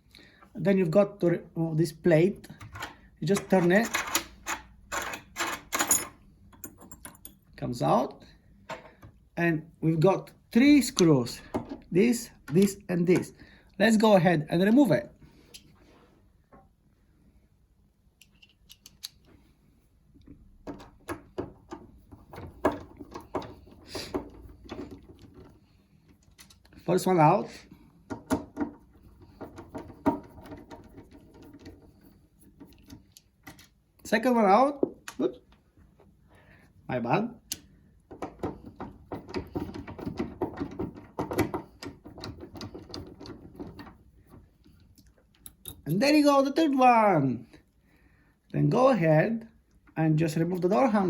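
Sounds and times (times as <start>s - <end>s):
screwdriver clicking and scraping: 18.2s - 19.3s, 28.1s - 33.7s.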